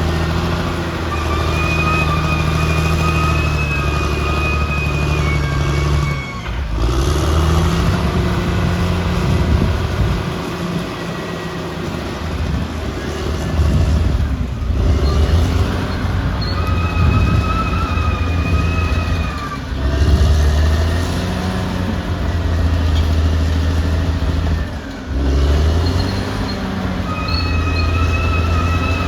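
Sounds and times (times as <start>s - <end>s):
high-pitched squeal: 0.0s - 12.1s, 13.0s - 29.0s
bulldozer diesel engine droning: 0.0s - 29.0s.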